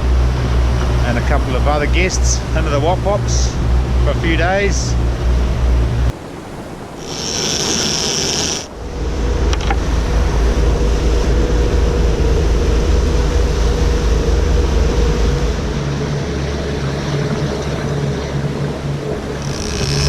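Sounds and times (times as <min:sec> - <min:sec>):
motorboat engine drone: 0:00.0 - 0:20.0
hiss: 0:07.0 - 0:08.7.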